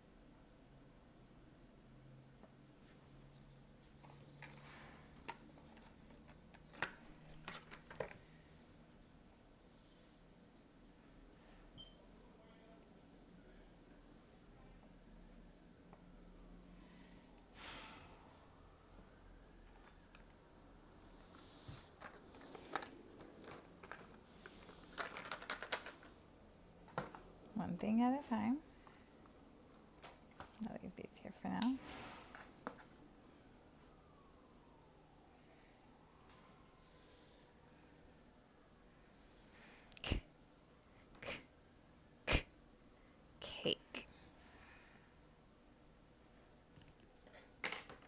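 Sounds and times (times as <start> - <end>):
crayons clicking and tapping: 4.0 - 8.2, 21.2 - 26.2, 46.8 - 48.0.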